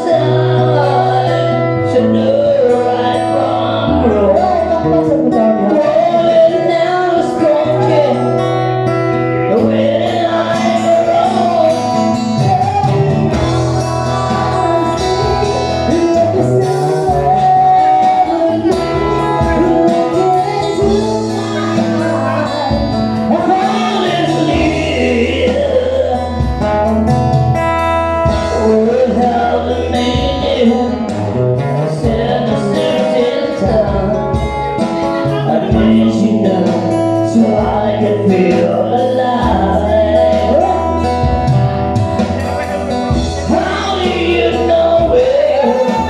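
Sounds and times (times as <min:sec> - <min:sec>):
bass line: 0:00.0 - 0:46.0
guitar: 0:00.0 - 0:46.0
person singing: 0:00.0 - 0:46.0.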